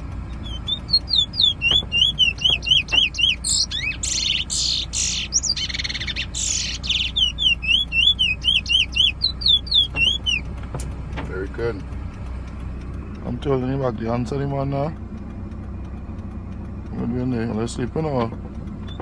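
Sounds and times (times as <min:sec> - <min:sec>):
harsh buzzy bird notes: 0:00.0 - 0:10.6
car engine hum: 0:00.0 - 0:19.0
bird singing whistles: 0:00.3 - 0:10.5.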